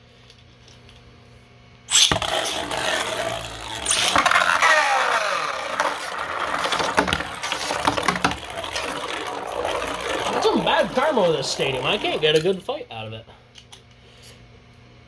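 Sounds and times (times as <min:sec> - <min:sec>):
spinning tops scraping and clacking: 0:01.9 - 0:12.7.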